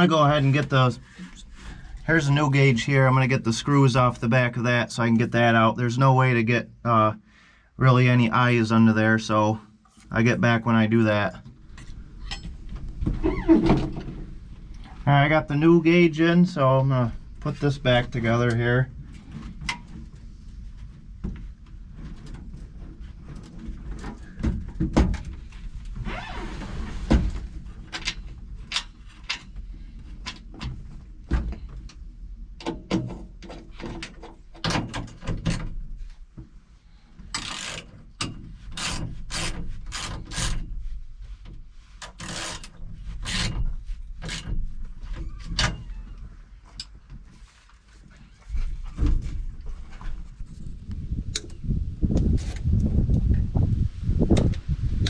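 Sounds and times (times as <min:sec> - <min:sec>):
rubbing and scraping: 0:25.4 - 0:27.8, 0:37.2 - 0:45.2
sharp clicks and knocks: 0:32.6 - 0:35.8, 0:37.2 - 0:40.7, 0:41.5 - 0:44.8, 0:51.3 - 0:52.7.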